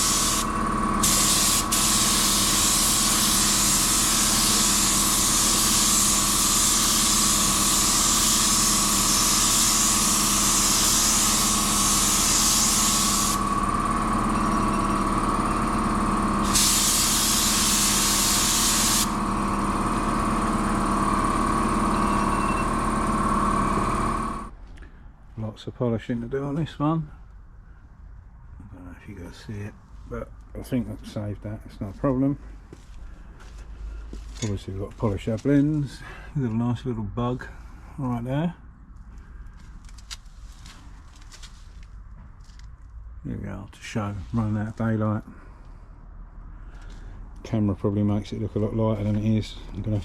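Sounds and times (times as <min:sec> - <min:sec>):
spray gun hissing: 0:00.0 - 0:13.6, 0:16.4 - 0:19.3
motor drone: 0:00.0 - 0:24.5.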